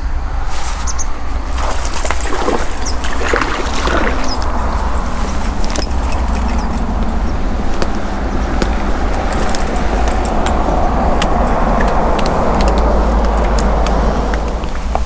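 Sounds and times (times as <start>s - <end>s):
metallic clicks and rattles: 9.0s - 12.8s.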